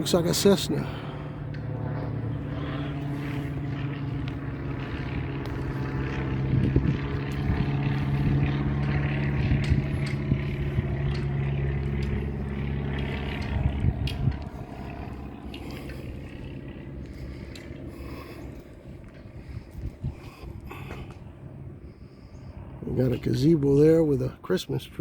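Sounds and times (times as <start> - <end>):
propeller plane droning overhead: 0.0 - 25.0.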